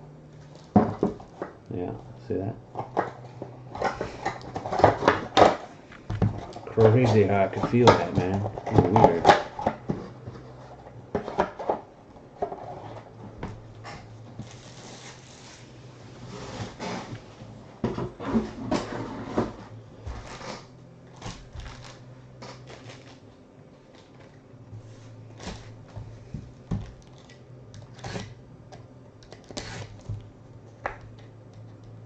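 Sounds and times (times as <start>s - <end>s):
low steady hum: 0.0s - 32.0s
packaging crinkling: 20.2s - 24.3s.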